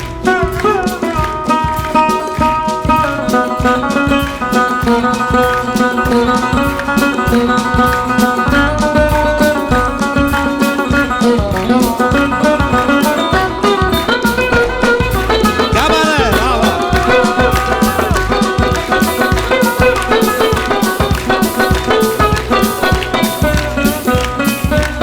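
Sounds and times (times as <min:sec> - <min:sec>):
band accompaniment: 0:14.8 - 0:24.2
fast drum beat: 0:15.4 - 0:23.9.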